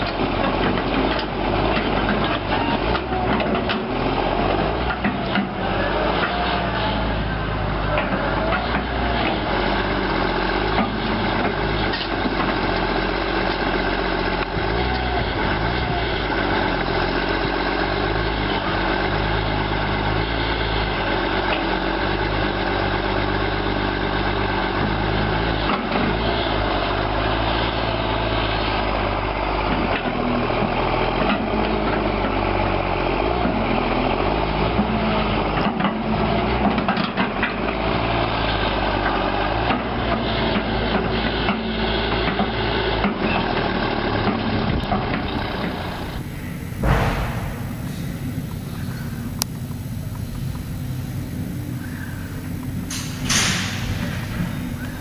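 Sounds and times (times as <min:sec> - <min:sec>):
heavy machine engine running: 0:00.0 - 0:55.0
metal clanks: 0:45.0 - 0:48.7, 0:52.8 - 0:55.0.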